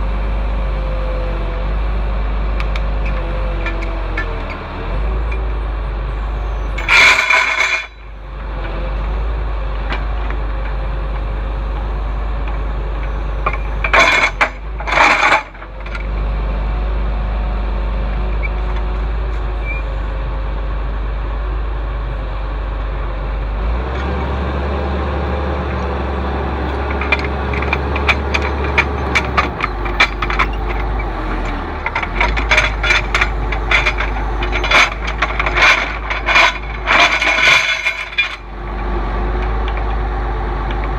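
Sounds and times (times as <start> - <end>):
large engine running: 0.0 - 40.9
metallic clinks and rattles: 6.8 - 8.0, 13.4 - 16.1, 26.7 - 38.5.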